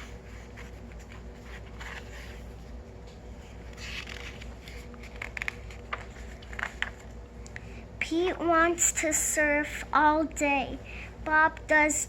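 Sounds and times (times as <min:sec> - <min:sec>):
paper rustling: 0:00.0 - 0:07.2
steady low hum: 0:00.0 - 0:12.0.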